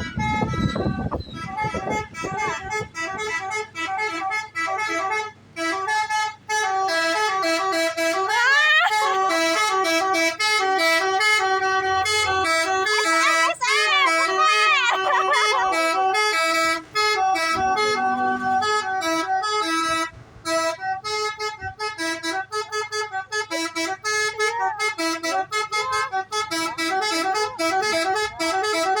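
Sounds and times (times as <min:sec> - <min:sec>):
multi-tone air horn melody: 0:00.0 - 0:29.0.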